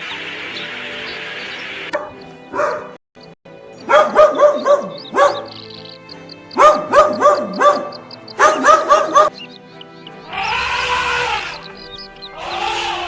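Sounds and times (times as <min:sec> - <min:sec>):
background music: 0:00.0 - 0:13.0
dog barking: 0:01.9 - 0:03.0, 0:03.8 - 0:05.6, 0:06.6 - 0:09.4.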